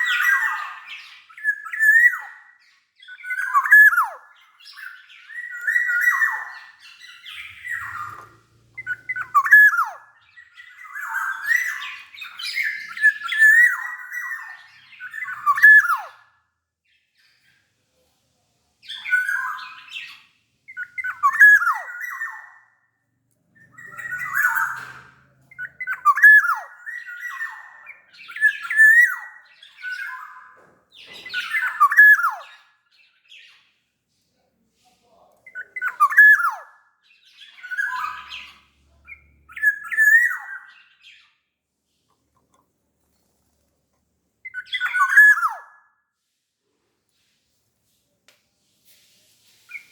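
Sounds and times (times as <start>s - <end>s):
bird whistled calls: 1.4s - 2.4s, 3.1s - 6.5s, 7.1s - 16.2s, 20.7s - 22.5s, 23.7s - 30.5s, 31.2s - 32.5s, 35.5s - 36.8s, 37.5s - 40.7s, 44.4s - 45.9s, 49.7s - 49.9s
bird scratchy squawks: 49.5s - 49.9s.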